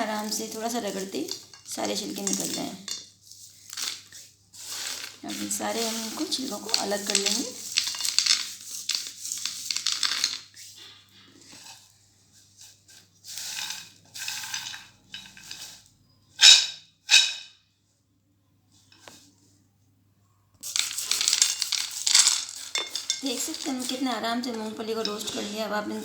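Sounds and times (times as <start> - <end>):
peanuts rattling on a plate: 0.0 - 10.6, 13.3 - 17.4, 20.6 - 26.0.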